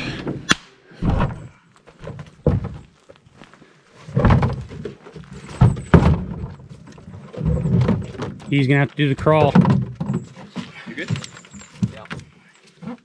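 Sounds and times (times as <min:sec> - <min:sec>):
dull thumps and knocks: 0:01.0 - 0:03.0, 0:04.1 - 0:12.3.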